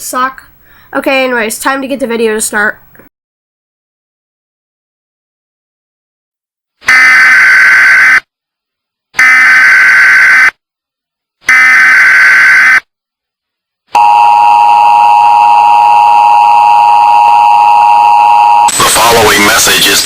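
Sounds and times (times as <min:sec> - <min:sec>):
two-tone attention signal: 0:14.0 - 0:18.7.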